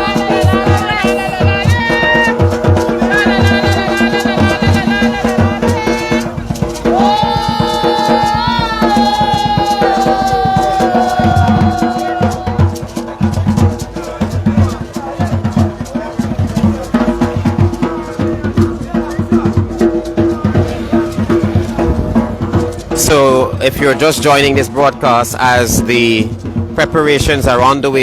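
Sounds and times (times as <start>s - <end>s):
drum beat: 0.0s - 28.0s
shaker percussion: 0.0s - 28.0s
person singing: 2.8s - 12.8s.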